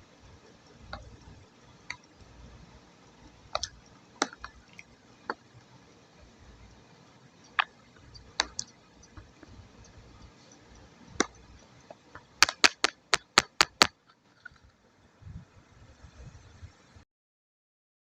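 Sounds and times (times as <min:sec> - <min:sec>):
wet clay sticky clicks and smacks: 0:12.2 - 0:14.0.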